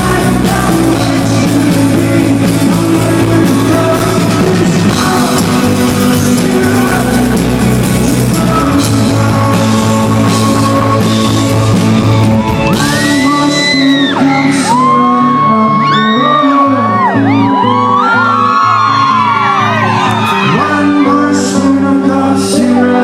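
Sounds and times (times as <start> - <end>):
lead singer: 0.0 - 23.0
live rock band playing: 0.0 - 23.0
audience shouting and whooping: 12.4 - 21.3.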